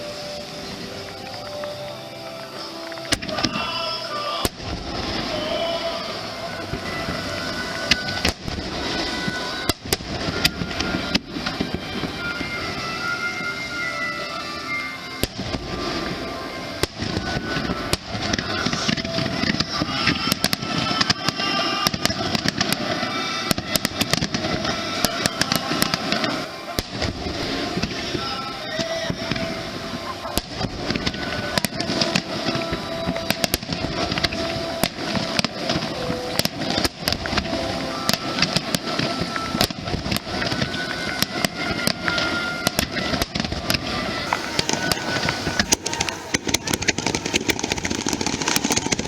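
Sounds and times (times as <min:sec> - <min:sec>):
fireworks bangs and crackles: 0:00.0 - 0:49.0
whistling rising shells: 0:44.2 - 0:49.0.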